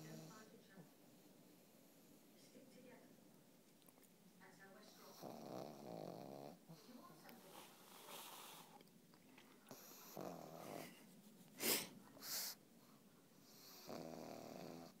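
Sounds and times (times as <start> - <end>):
dog snoring: 0.0 - 0.5, 5.0 - 8.8, 9.7 - 11.0, 13.4 - 15.0
hissing puffs of breath: 11.6 - 12.6.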